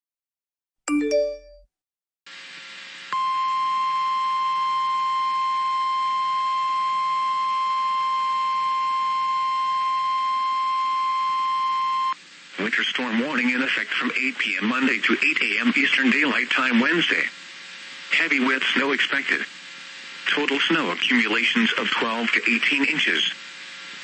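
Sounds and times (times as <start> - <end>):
short chime: 0.9 - 1.7
steady single-pitch alarm tone: 3.1 - 12.2.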